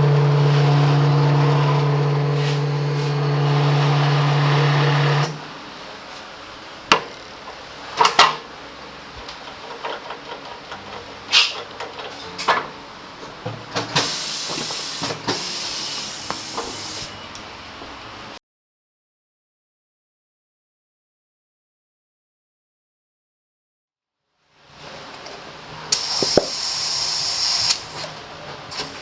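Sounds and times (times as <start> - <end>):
electric motor humming: 0.0 - 5.4.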